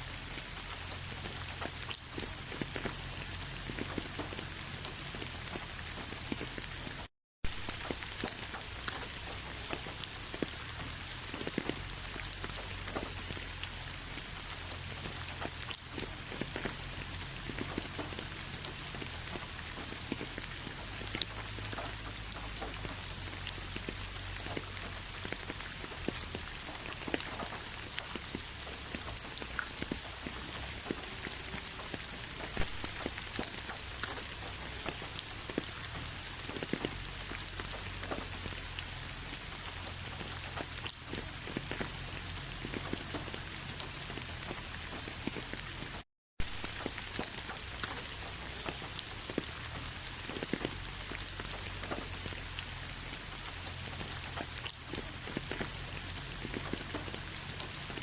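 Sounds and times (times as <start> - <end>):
rain falling with drop taps: 0.0 - 58.0.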